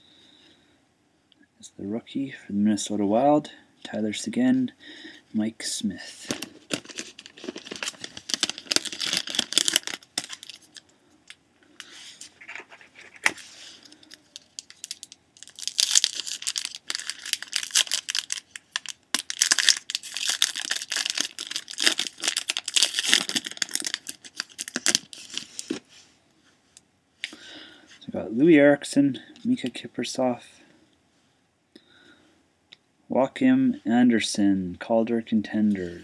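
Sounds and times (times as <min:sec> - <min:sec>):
foil wrappers tearing and crinkling: 0:06.3 - 0:10.8, 0:13.1 - 0:25.8.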